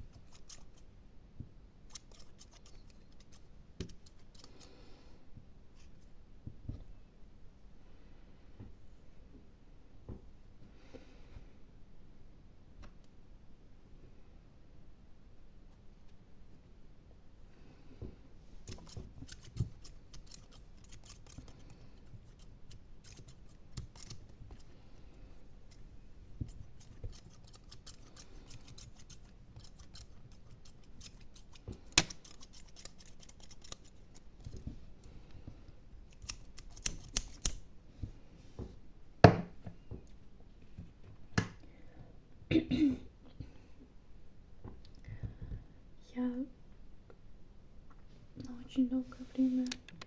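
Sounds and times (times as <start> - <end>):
crisp clicks and scrapes: 18.6 - 24.9, 25.6 - 37.6.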